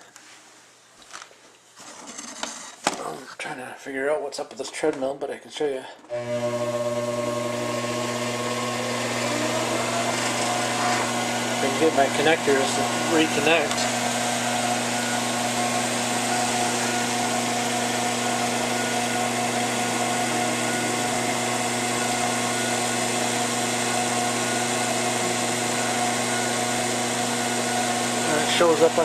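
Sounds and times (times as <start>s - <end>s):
electric motor hum with whine: 6.1s - 29.0s.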